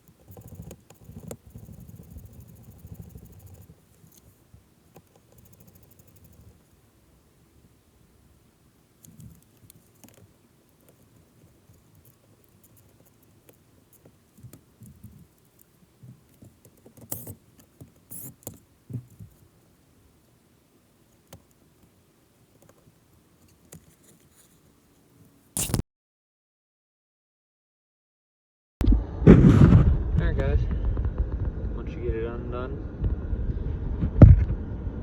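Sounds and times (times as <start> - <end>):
low steady hum: 0.0 - 25.6.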